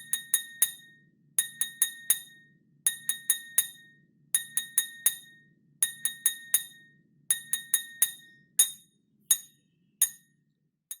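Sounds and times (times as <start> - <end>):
spoon tapping a drinking glass: 0.0 - 0.8, 1.4 - 2.3, 2.9 - 3.8, 4.4 - 10.2.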